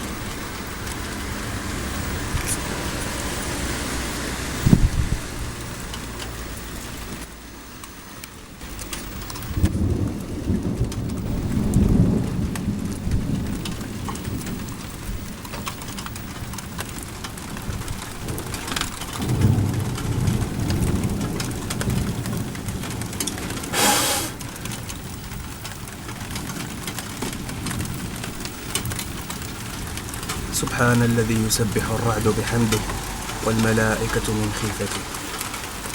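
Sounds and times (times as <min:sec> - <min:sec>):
steady rain: 0:00.0 - 0:35.9
rolling thunder: 0:08.6 - 0:15.4, 0:19.2 - 0:25.5.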